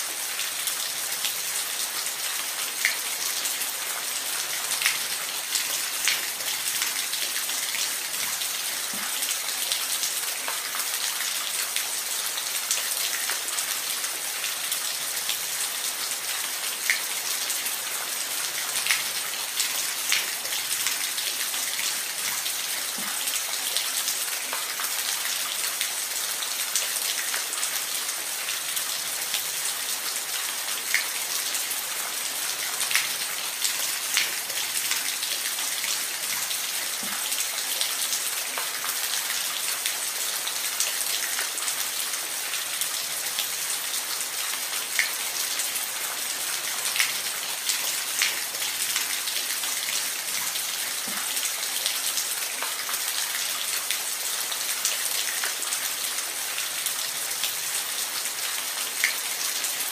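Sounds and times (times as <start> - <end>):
steady rain hiss: 0.0 - 59.9.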